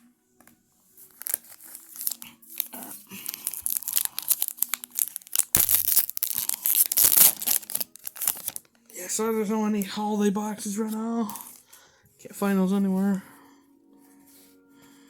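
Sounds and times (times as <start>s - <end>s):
wrapper tearing and crinkling: 1.0s - 8.7s.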